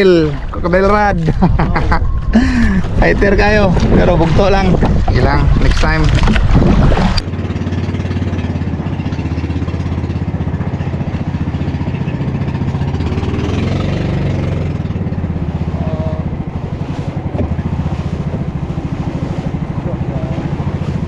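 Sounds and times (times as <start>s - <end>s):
boat engine puttering: 0.0s - 21.0s.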